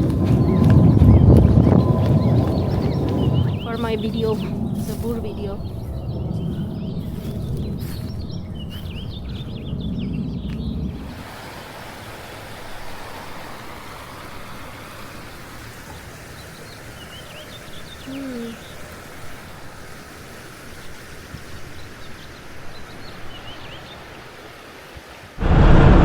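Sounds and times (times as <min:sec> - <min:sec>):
small birds chirping: 0:00.0 - 0:11.2, 0:15.1 - 0:24.7
outdoor background noise: 0:00.0 - 0:26.0.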